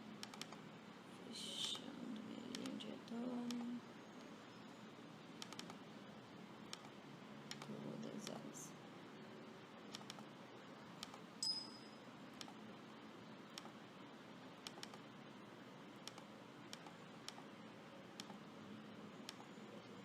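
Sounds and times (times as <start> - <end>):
faint room hiss: 0.0 - 20.0
computer mouse clicks: 0.2 - 0.6, 2.4 - 3.7, 5.4 - 5.8, 6.7 - 8.4, 9.9 - 10.3, 11.0 - 11.6, 12.4 - 12.6, 13.5 - 13.8, 14.6 - 15.1, 16.0 - 17.5, 18.2 - 18.4, 19.2 - 20.0
click with high ring: 11.4 - 12.0.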